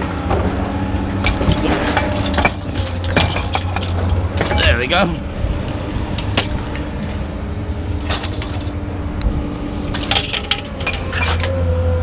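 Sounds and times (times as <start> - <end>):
scrap metal clanking: 1.2 - 4.9, 8.0 - 8.8, 9.7 - 11.6.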